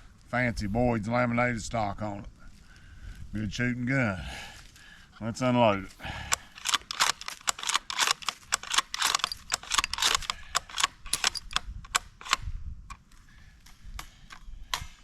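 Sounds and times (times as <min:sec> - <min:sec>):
rifle bolt metallic clicks: 0:06.3 - 0:15.0.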